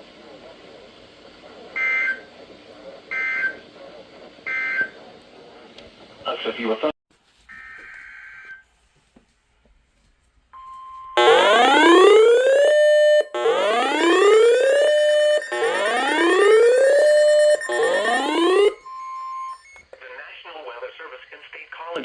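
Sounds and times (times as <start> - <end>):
electronic alarm beep: 10.6 - 19.9
rising whoop alarm sweeps: 11.2 - 19.6.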